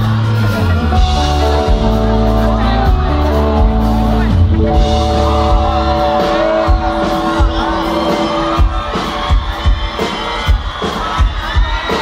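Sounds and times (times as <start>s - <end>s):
live band music over sound system: 0.0s - 12.0s
person singing: 0.3s - 9.0s
drum beat: 1.0s - 12.0s.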